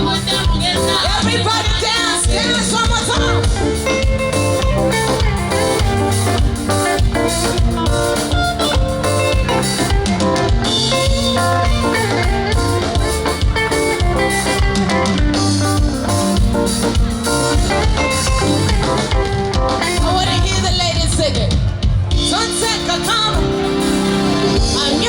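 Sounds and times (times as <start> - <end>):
person singing: 0.0 - 3.9
live band playing: 0.0 - 25.0.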